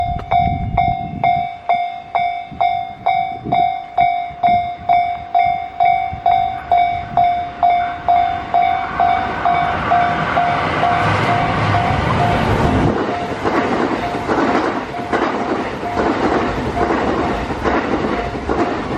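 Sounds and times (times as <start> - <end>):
level crossing bell ringing: 0.0 - 12.4
approaching train: 0.0 - 18.9.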